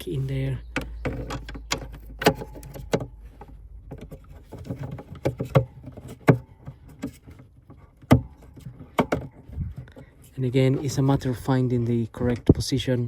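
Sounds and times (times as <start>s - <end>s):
hard plastic clicks and knocks: 0.6s - 10.2s.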